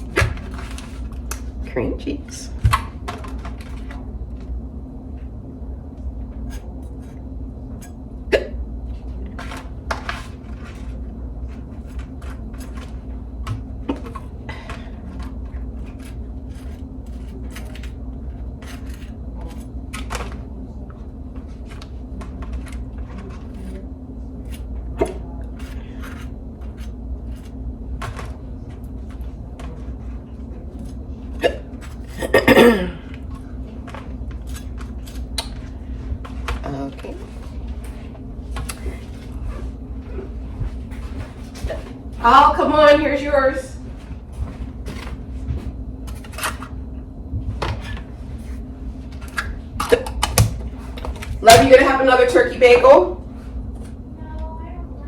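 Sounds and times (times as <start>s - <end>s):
steady low hum: 0.0s - 55.0s
woman hiccuping: 8.3s - 8.6s, 31.4s - 33.0s.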